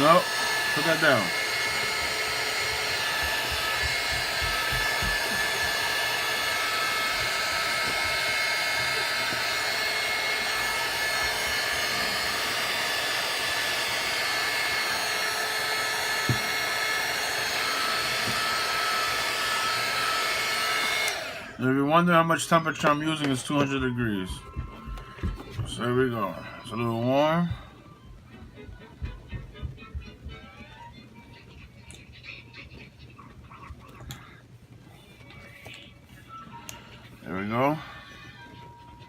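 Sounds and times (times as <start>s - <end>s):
heat gun blowing air: 0.0s - 21.6s
fan motor whine: 0.0s - 31.2s.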